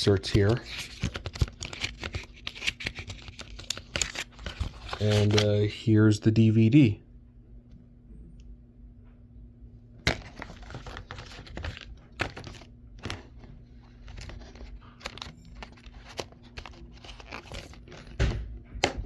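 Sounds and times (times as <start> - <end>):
packaging crinkling: 0.3 - 5.8, 10.1 - 18.2.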